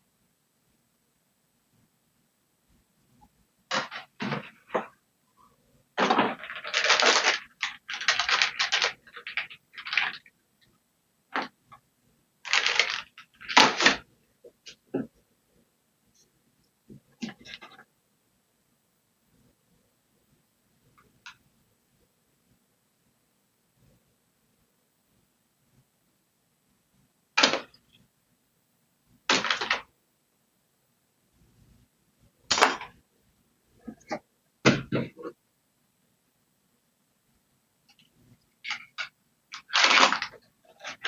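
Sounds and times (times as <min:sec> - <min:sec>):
packaging rustling: 0:03.7 - 0:04.9, 0:06.0 - 0:10.3, 0:12.5 - 0:14.0, 0:38.6 - 0:41.0
parts clattering: 0:03.7 - 0:05.0, 0:06.0 - 0:10.2.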